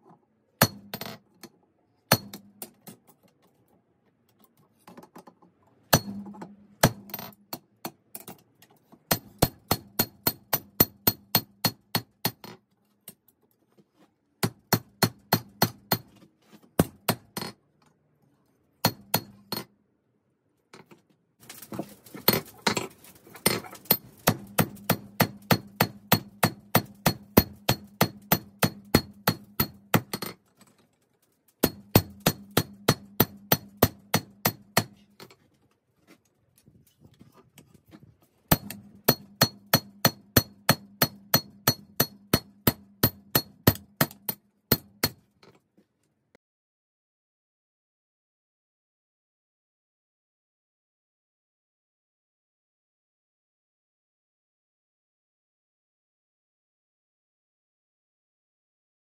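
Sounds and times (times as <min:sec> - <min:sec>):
hammer striking steel on anvil: 0:00.6 - 0:01.1, 0:05.9 - 0:07.0, 0:18.8 - 0:19.7, 0:24.2 - 0:30.2, 0:31.6 - 0:35.0, 0:38.5 - 0:45.2.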